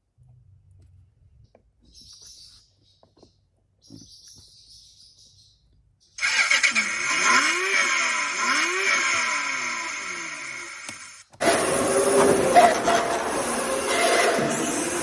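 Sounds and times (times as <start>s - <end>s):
motor whining: 6.2s - 15.0s.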